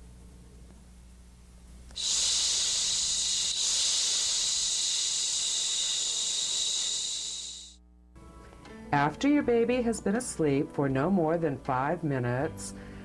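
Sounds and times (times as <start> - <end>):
woman hissing: 2.0 - 7.8.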